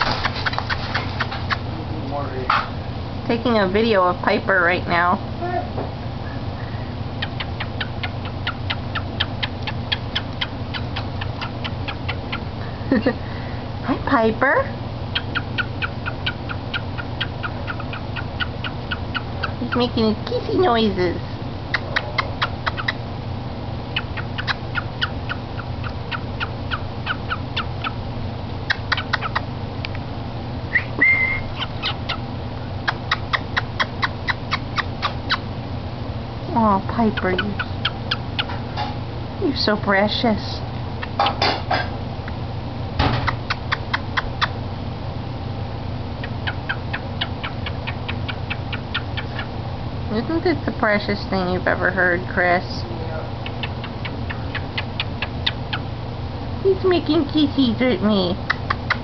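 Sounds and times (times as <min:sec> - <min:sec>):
cockatiel kissing clicks: 0:00.0 - 0:01.6, 0:07.2 - 0:12.4, 0:15.2 - 0:19.5, 0:21.7 - 0:23.0, 0:24.0 - 0:28.0, 0:28.7 - 0:29.4, 0:31.0 - 0:32.2, 0:32.8 - 0:35.4, 0:43.2 - 0:44.6, 0:46.2 - 0:49.5, 0:53.4 - 0:55.8, 0:58.5 - 0:59.0
cockatiel whistled chirp: 0:30.7 - 0:32.2.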